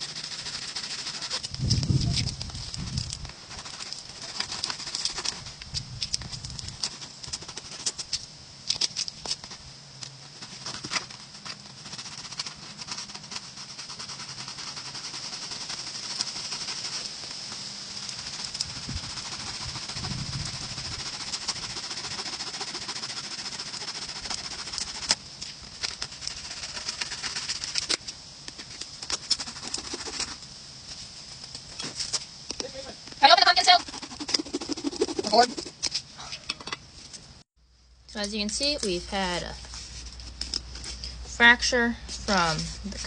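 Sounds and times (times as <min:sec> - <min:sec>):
saw cutting gourd shell: 0:00.0 - 0:01.5, 0:18.0 - 0:25.2, 0:33.4 - 0:36.0
high-pitched background buzz: 0:32.5 - 0:36.8.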